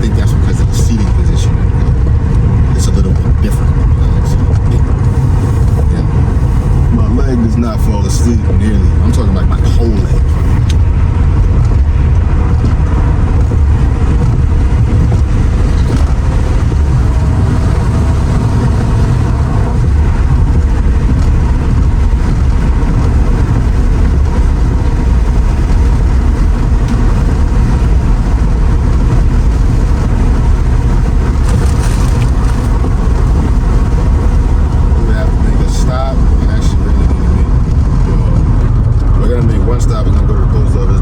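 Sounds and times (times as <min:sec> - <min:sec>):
wind and road noise in car: 0:00.0 - 0:41.0.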